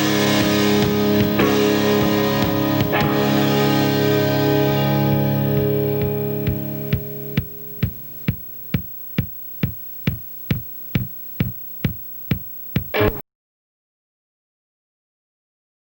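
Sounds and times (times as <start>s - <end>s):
held music chord: 0.0s - 8.5s
drum machine beat: 0.0s - 13.1s.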